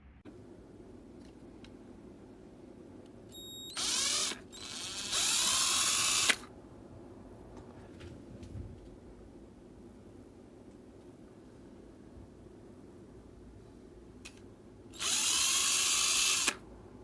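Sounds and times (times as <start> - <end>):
cordless drill whining: 3.3 - 6.5, 15.0 - 16.6.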